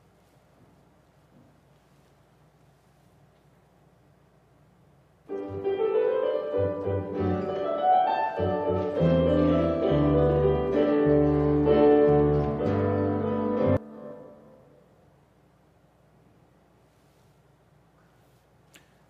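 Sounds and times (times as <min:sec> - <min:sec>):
instrumental keyboard music: 0:05.3 - 0:14.8.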